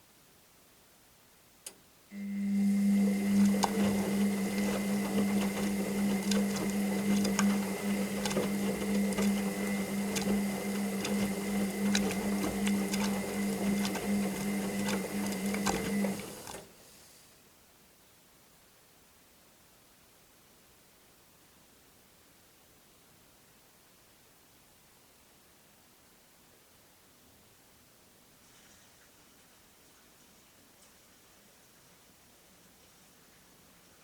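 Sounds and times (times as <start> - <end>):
clicks: 1.6 - 16.6
washing machine motor humming: 2.1 - 16.7.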